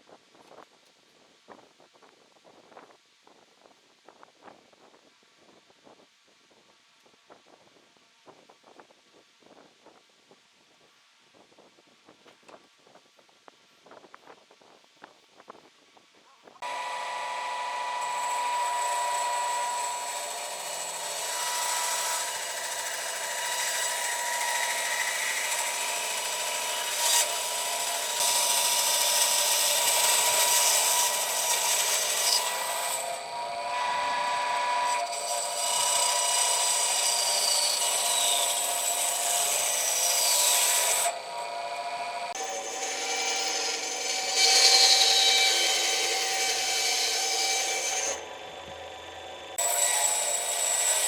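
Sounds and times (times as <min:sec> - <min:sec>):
power tool whining: 0:16.6 - 0:51.0.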